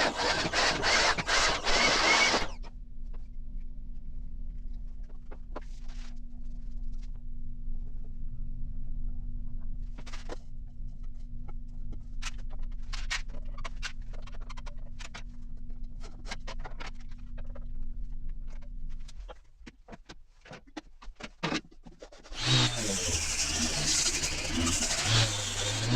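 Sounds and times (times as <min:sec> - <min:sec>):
scraping rasps: 0:00.0 - 0:02.6, 0:22.2 - 0:25.9
machine humming: 0:22.3 - 0:25.9.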